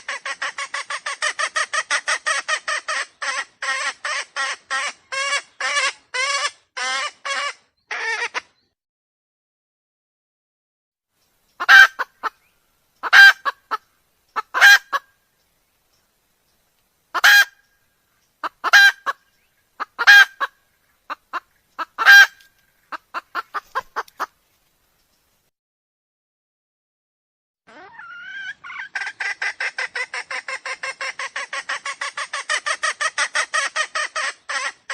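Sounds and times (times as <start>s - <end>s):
junglefowl calling: 0.0s - 8.5s, 11.6s - 15.2s, 17.1s - 24.4s, 27.7s - 34.9s.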